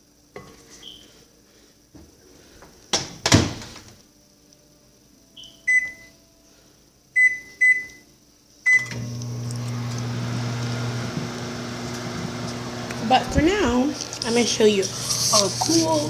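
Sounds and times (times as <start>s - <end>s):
keypad beeps: 5.4s - 6.1s, 7.2s - 8.0s
microwave oven humming: 8.7s - 15.0s.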